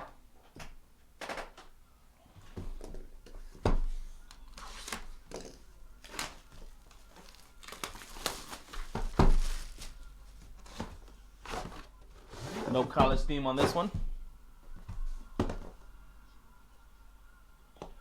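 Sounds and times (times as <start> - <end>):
plastic wrapping crinkling and tearing: 4.5 - 10.8.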